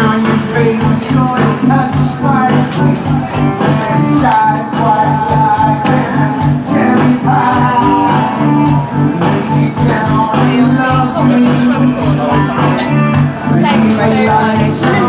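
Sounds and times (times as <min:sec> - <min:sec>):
person singing: 0:00.0 - 0:15.0
pulsing bass beat: 0:00.0 - 0:15.0
strummed guitar: 0:00.0 - 0:15.0.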